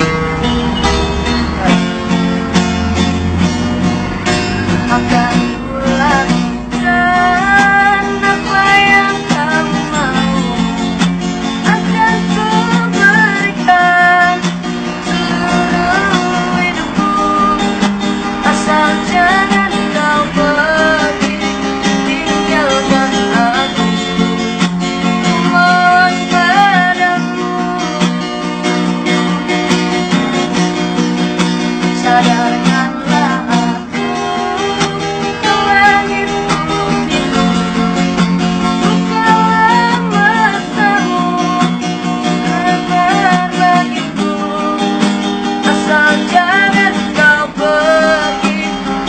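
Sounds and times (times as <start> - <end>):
person singing: 0.0 - 3.4, 4.1 - 31.0, 31.6 - 49.0
strummed acoustic guitar: 0.0 - 49.0.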